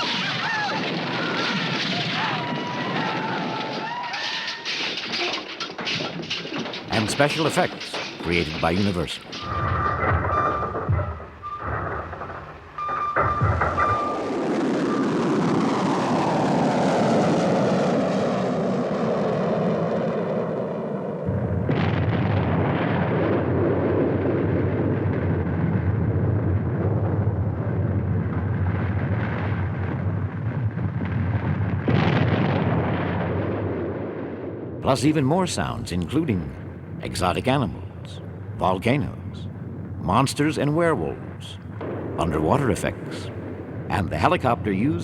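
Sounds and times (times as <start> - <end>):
low rumble with surges: 37.9 - 42.3.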